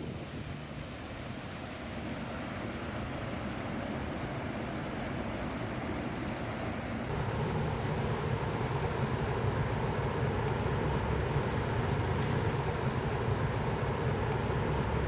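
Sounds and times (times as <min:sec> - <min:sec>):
rush of moving water: 0:00.0 - 0:15.0.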